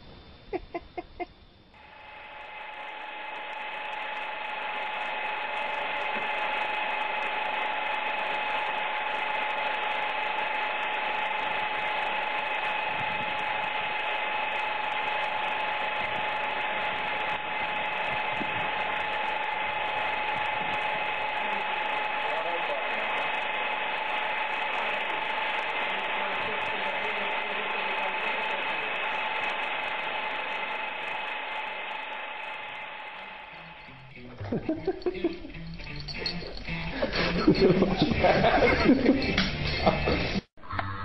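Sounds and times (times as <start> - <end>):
small motor whirring with hiss: 1.8 - 34.1.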